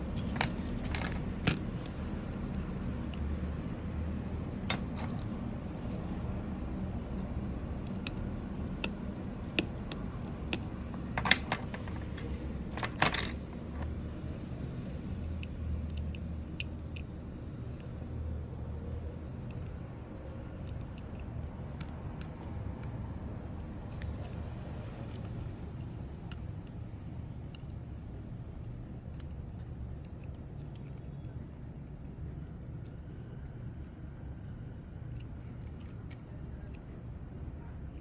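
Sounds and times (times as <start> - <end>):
metallic clicks and clinks: 0.0 - 1.8, 4.7 - 6.1, 7.2 - 13.8.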